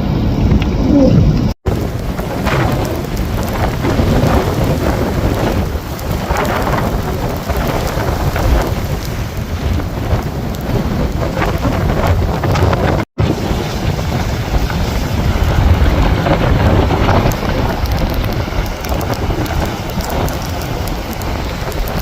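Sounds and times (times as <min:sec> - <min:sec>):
rushing roar of weather and water: 0:00.0 - 0:22.0
wind buffeting microphone: 0:00.0 - 0:22.0.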